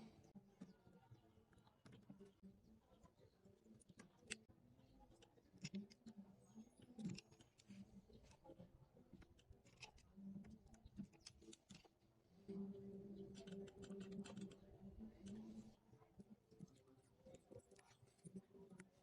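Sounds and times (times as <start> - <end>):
faint low hum: 0.0 - 19.0
small clicks and light scraping: 5.1 - 12.0, 13.3 - 15.8.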